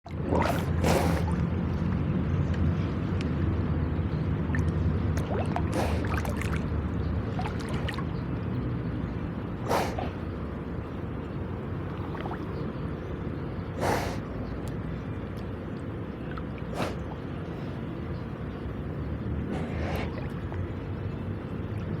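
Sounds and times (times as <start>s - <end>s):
water buffalo snorting: 0.3s - 1.4s, 9.7s - 10.3s, 13.8s - 14.2s, 16.8s - 17.0s, 19.5s - 20.4s.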